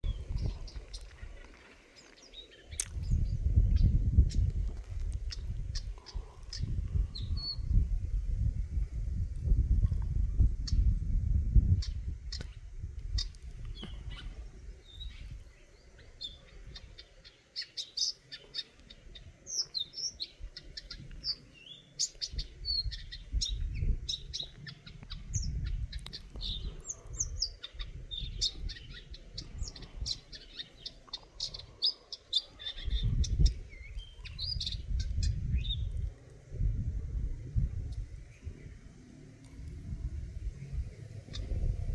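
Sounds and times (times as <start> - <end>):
bird chirping: 11.7 - 36.1.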